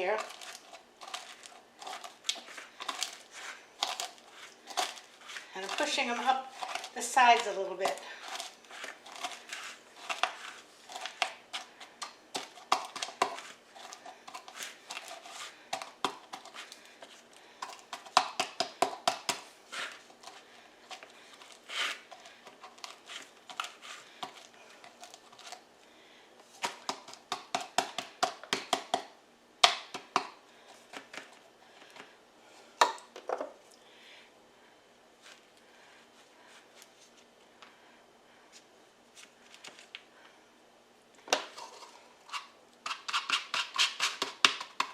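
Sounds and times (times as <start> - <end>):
cup tapping crumb crust: 0.0 - 25.6, 26.5 - 32.1, 42.8 - 44.9.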